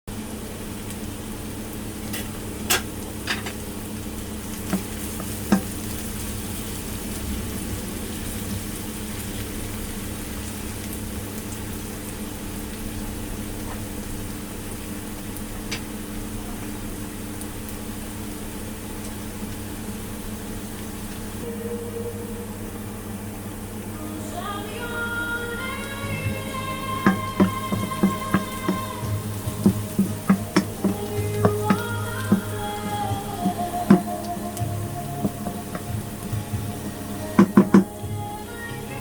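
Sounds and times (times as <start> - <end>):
vegetables sizzling in a pan: 0.1 - 21.5, 23.4 - 39.0
utensil clicking against pan: 4.5 - 6.0, 27.0 - 38.0
low hum: 21.4 - 39.0.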